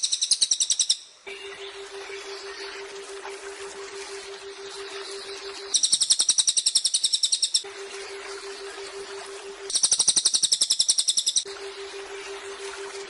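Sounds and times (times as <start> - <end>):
bird singing high trills: 0.0 - 3.2, 4.0 - 12.4
low pulsing drone: 1.3 - 6.0, 7.6 - 10.3, 11.4 - 13.0.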